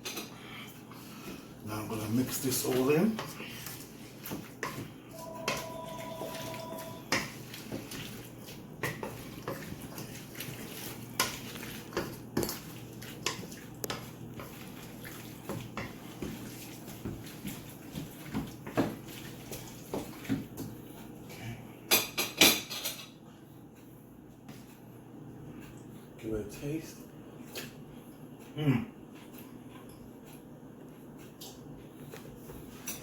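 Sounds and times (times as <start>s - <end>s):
utensil stirring in a bowl: 0.7s - 21.1s.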